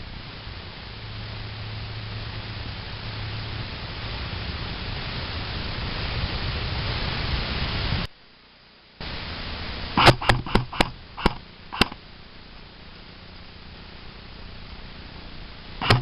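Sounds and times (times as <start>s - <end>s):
wind or microphone hiss: 0.0s - 16.0s
airsoft gunshots: 10.0s - 12.0s.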